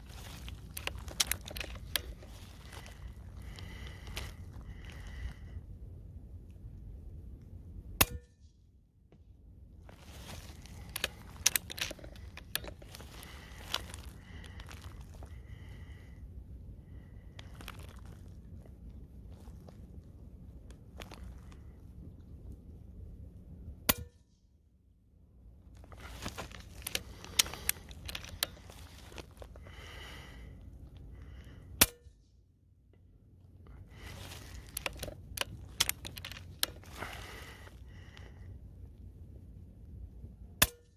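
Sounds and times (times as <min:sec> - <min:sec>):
rustling: 0:00.0 - 0:05.5, 0:09.8 - 0:16.1, 0:16.8 - 0:22.5, 0:25.7 - 0:31.5, 0:33.6 - 0:38.4
metallic clicks from rifle handling: 0:00.2 - 0:04.3, 0:10.1 - 0:13.9, 0:26.0 - 0:29.3, 0:34.1 - 0:36.9.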